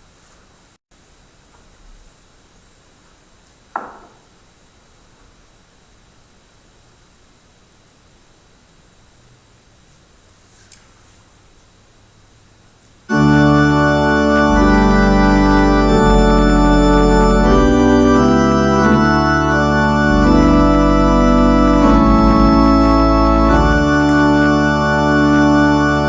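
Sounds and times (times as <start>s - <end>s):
deep bass line: 13.1s - 26.0s
organ playing sustained chords: 13.1s - 26.0s.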